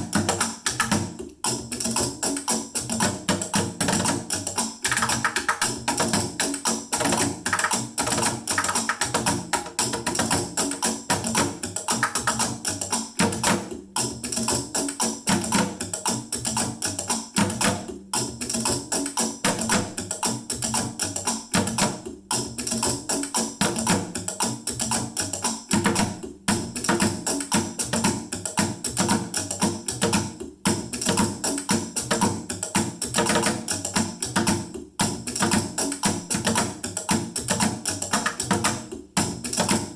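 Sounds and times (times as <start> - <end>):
sticks drumming on plastic containers: 0.0 - 1.3, 2.4 - 13.8, 29.9 - 39.9.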